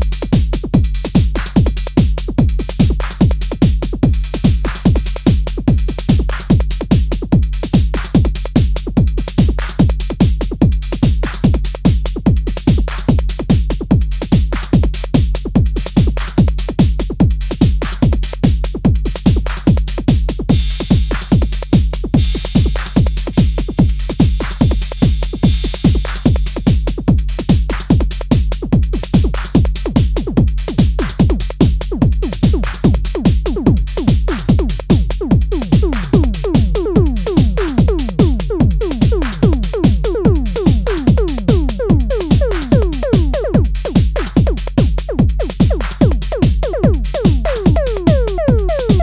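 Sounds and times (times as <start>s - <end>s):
drum machine hats and clicks: 0.0s - 49.0s
drum machine kick drum: 0.0s - 49.0s
hissing cymbal layer: 22.2s - 26.6s.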